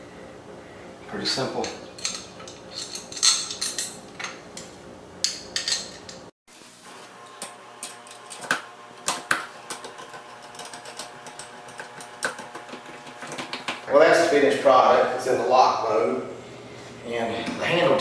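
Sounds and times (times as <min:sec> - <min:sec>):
metal lock parts clinking and clicking: 0:01.6 - 0:06.3, 0:07.8 - 0:12.6.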